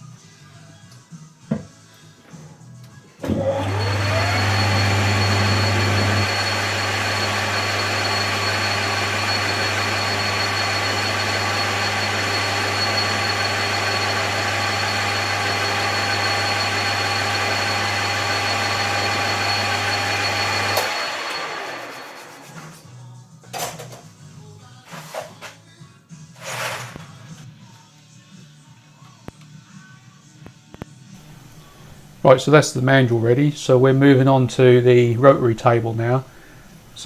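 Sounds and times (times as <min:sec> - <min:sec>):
lathe motor whining and humming: 0:03.2 - 0:22.8, 0:31.2 - 0:37.0.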